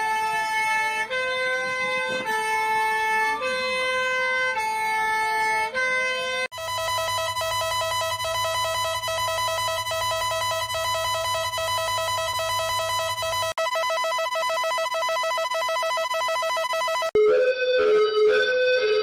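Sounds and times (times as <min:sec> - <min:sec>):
electronic alert tone trilling: 0:06.5 - 0:17.2.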